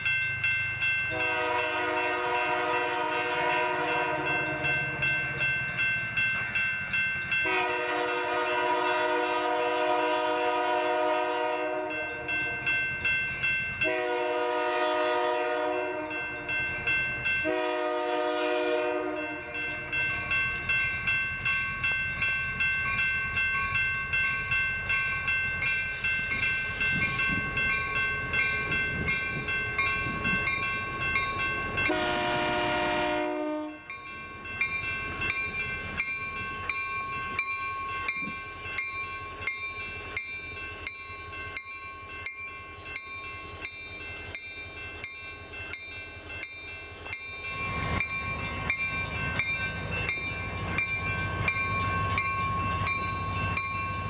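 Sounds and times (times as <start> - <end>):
locomotive horn blast: 1.1 - 4.7, 7.4 - 12.0, 13.8 - 16.2, 17.4 - 19.4, 31.9 - 33.8
train wheels clicking over rail joints: 33.9 - 54.0.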